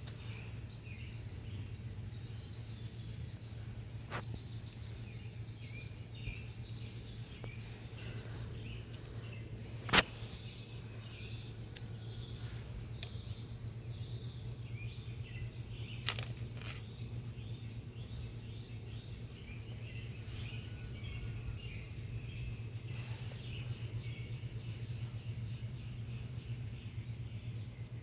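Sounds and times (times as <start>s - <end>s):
small bird chirps: 0.0s - 28.0s
steady low hum: 0.0s - 28.0s
sharp click: 9.9s - 10.2s.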